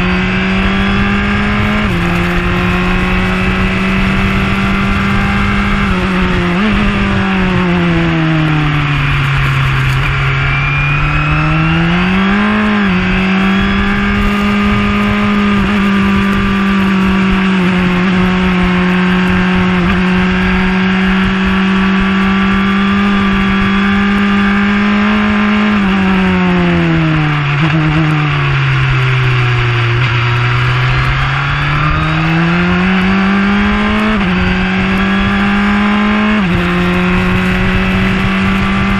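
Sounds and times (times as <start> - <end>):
race car engine: 0.0 - 38.9.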